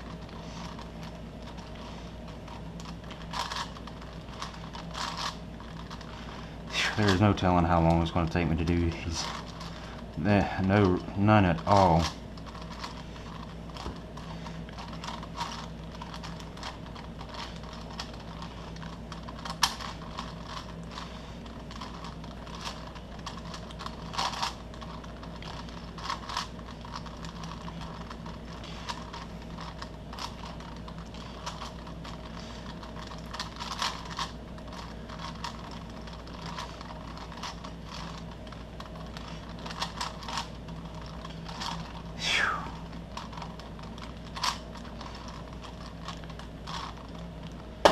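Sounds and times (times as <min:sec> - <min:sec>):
low steady hum: 0:00.0 - 0:47.9.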